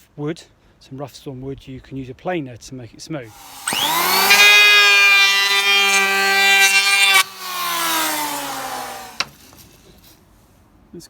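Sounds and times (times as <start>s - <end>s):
electric hand planer whining: 3.3s - 9.4s.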